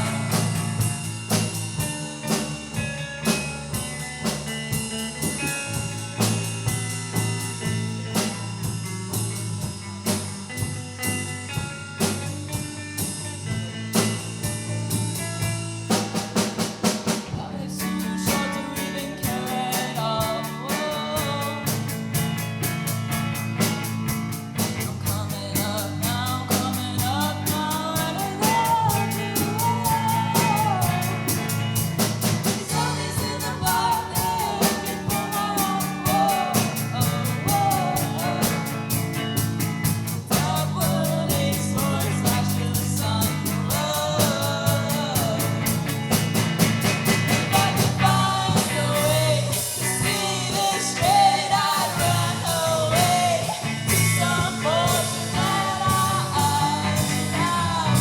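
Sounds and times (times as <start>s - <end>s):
lead vocal singing: 0.0s - 2.4s, 16.8s - 23.7s, 24.5s - 58.0s
drum kit beat: 0.0s - 58.0s
guitar: 0.0s - 58.0s.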